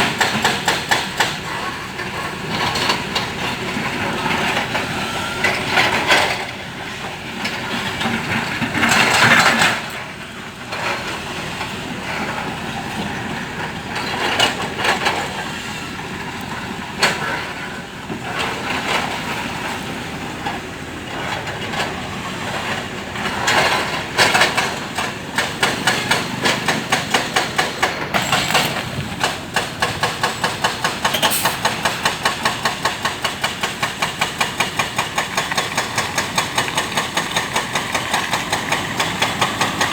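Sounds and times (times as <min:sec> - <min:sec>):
excavator diesel engine running: 0:00.0 - 0:39.9
machine clanks and knocks: 0:22.6 - 0:39.9.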